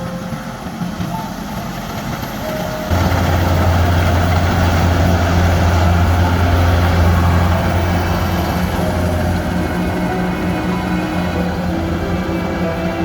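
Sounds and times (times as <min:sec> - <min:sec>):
combine harvester engine drone: 0:02.2 - 0:13.0.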